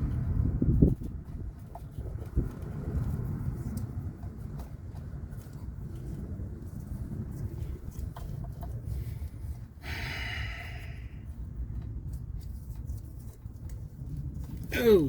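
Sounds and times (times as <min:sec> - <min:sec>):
low steady rumble: 0:00.0 - 0:15.0
person sighing: 0:14.7 - 0:15.0.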